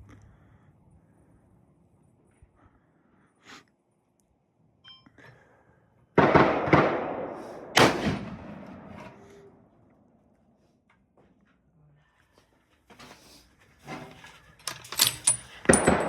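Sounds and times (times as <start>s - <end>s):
loud gunshots with echo: 6.2s - 9.2s, 15.7s - 16.0s.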